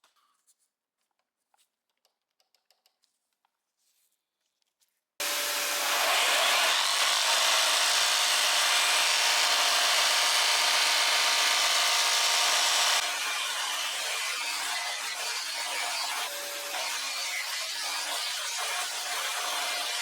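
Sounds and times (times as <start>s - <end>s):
jigsaw sawing wood: 5.2s - 20.0s.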